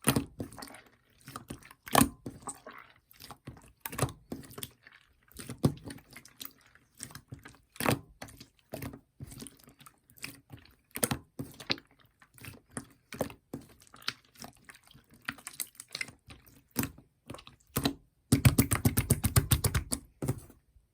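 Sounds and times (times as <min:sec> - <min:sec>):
slime squishing with sticky clicks: 0:00.0 - 0:20.5.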